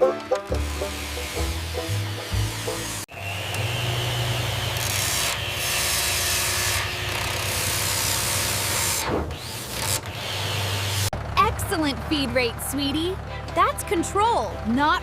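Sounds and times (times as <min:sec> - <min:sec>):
table saw cutting wood: 0:00.2 - 0:11.1.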